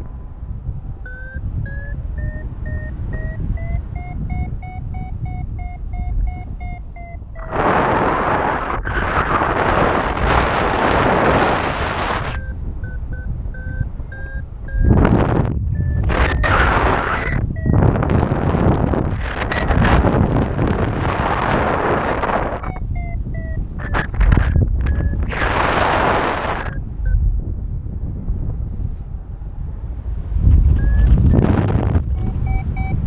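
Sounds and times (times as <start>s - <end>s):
wind noise on microphone: 0.0s - 33.0s
variometer beeping: 0.9s - 18.4s, 21.7s - 27.2s, 30.7s - 33.0s.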